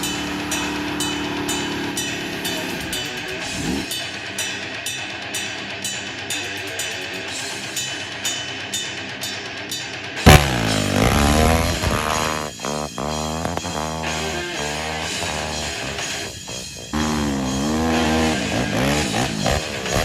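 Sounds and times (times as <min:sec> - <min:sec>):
low steady drone: 0:00.0 - 0:03.9
rock music with drums and guitar: 0:00.0 - 0:20.0.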